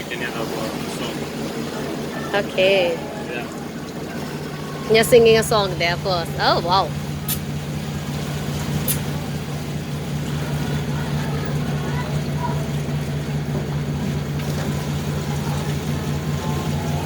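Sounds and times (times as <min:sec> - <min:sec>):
boat engine droning: 0:00.0 - 0:17.0
faint voices: 0:00.0 - 0:17.0.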